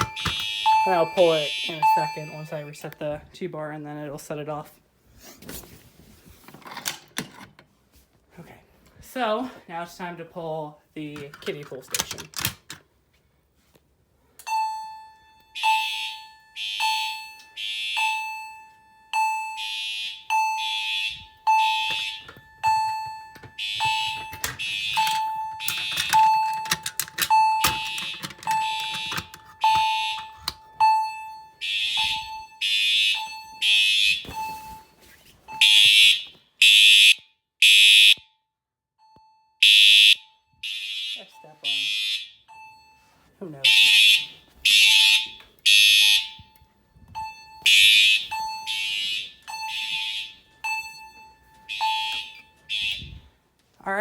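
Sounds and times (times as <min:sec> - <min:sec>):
fire alarm chime strikes: 0:00.0 - 0:02.9, 0:14.4 - 0:34.9, 0:39.0 - 0:53.2
pulsing buzzy alarm horn: 0:35.6 - 0:38.2, 0:43.6 - 0:46.4, 0:47.7 - 0:50.4.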